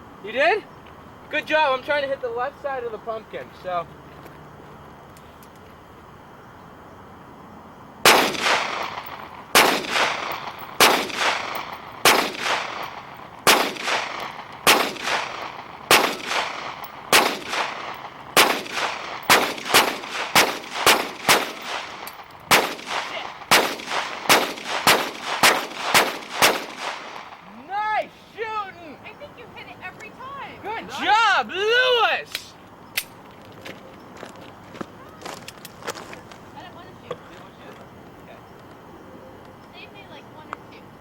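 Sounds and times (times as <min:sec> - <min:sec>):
gunshots: 0:08.0 - 0:27.6.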